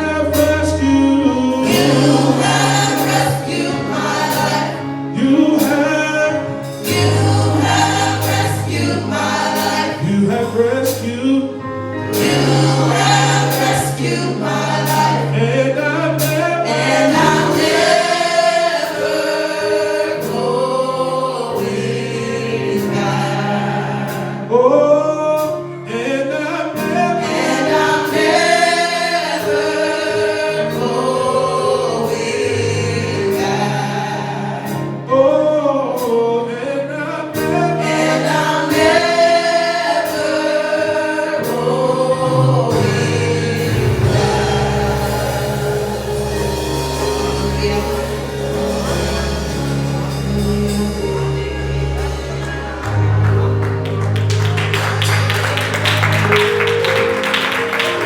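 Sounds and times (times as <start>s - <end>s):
held bass notes: 0.0s - 18.9s, 41.4s - 58.0s
choir singing gospel: 0.0s - 58.0s.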